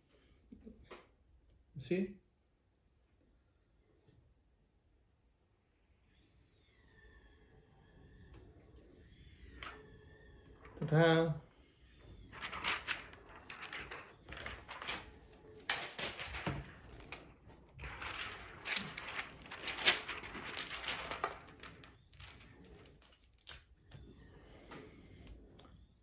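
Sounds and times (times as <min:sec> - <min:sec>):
plastic parts rustling and scraping: 0:12.3 - 0:23.8.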